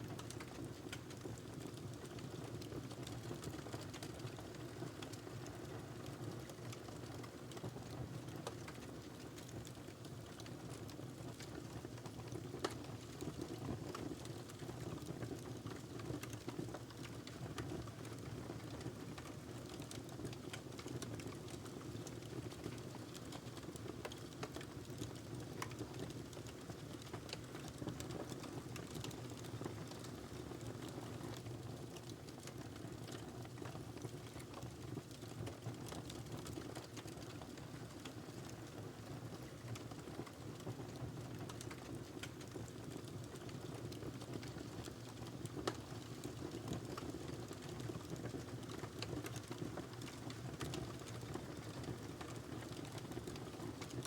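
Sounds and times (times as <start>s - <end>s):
logs crackling and popping: 18.8s - 31.4s, 32.0s - 38.5s, 39.4s - 54.0s.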